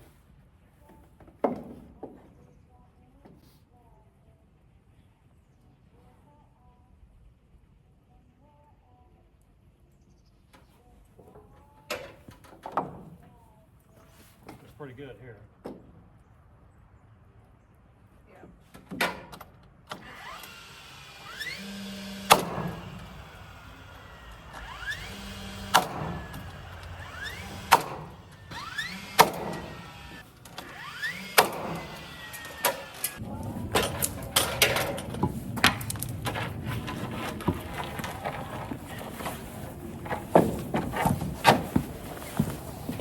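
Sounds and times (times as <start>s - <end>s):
short rising squeak: 21.2s - 33.2s
sharp knocks on siding: 24.5s - 30.1s.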